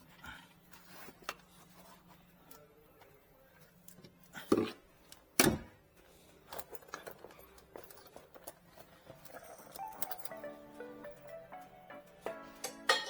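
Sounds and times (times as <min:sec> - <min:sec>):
music: 0:09.2 - 0:13.0.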